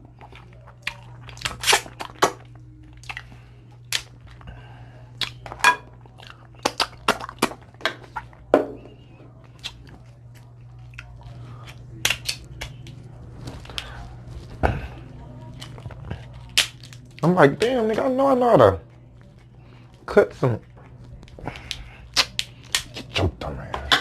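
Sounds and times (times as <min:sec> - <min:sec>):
chewing: 0:00.0 - 0:18.0, 0:18.8 - 0:23.9
crab shell cracking: 0:00.9 - 0:04.2, 0:09.5 - 0:14.0, 0:15.6 - 0:17.3, 0:20.7 - 0:23.2.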